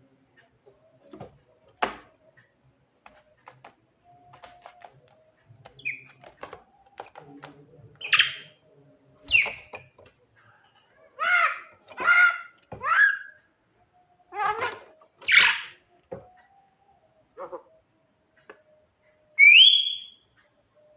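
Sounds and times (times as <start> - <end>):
myna harsh calls: 11.0 - 13.4
bird whistled note: 19.4 - 20.2.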